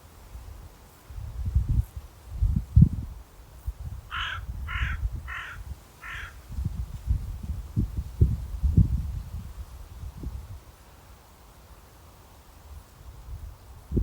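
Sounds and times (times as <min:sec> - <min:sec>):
crow cawing: 0:04.1 - 0:06.4.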